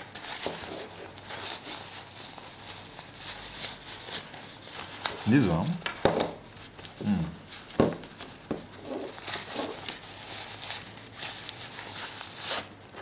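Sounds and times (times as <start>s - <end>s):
rustling and scraping: 0.0s - 13.0s.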